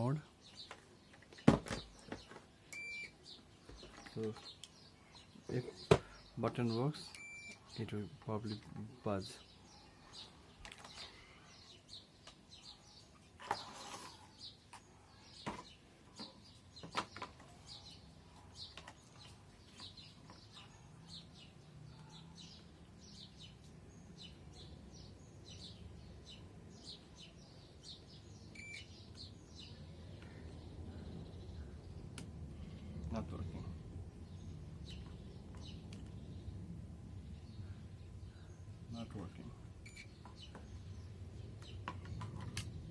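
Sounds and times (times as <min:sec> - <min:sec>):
small birds chirping: 0:00.0 - 0:42.9
brief beep: 0:02.8 - 0:03.1, 0:07.2 - 0:07.6, 0:28.6 - 0:28.9.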